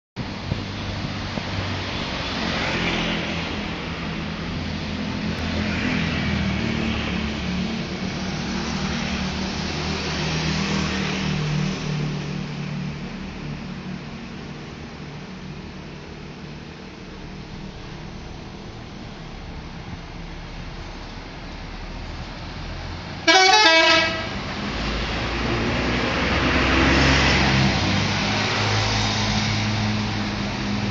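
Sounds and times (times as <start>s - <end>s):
bus engine running: 0.2s - 30.9s
road noise: 0.2s - 30.9s
multi-tone musical bus horn: 23.2s - 24.4s.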